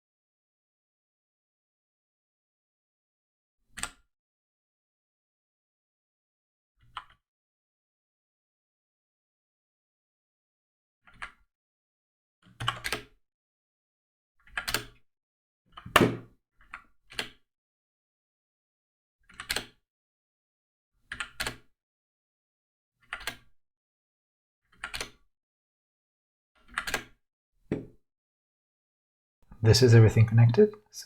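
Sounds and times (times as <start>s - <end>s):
mouse and keyboard clicks: 23.0s - 23.5s, 26.7s - 27.1s.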